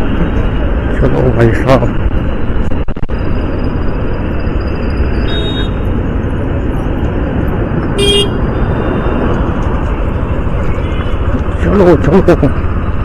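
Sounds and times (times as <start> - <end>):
motorcycle wind and road noise: 0.0 - 13.0
vehicle horn toot: 5.2 - 5.9, 8.0 - 9.2.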